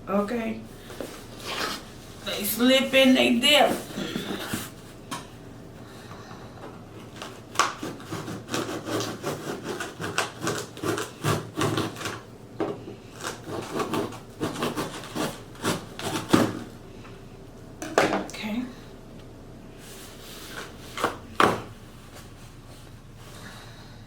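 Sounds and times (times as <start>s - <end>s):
knife scraping through cardboard: 1.4s - 1.9s, 7.2s - 12.2s, 13.2s - 16.7s.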